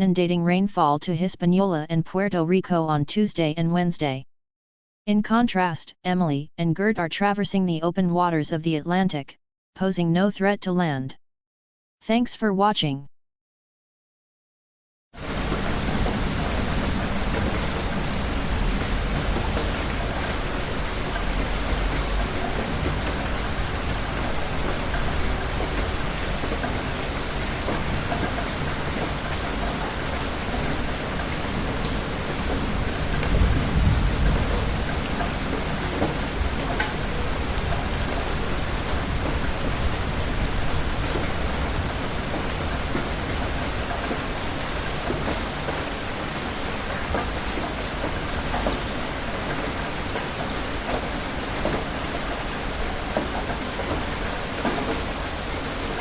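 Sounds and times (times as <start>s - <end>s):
steady rain falling: 15.2s - 56.0s
low rumble of thunder: 30.5s - 42.9s.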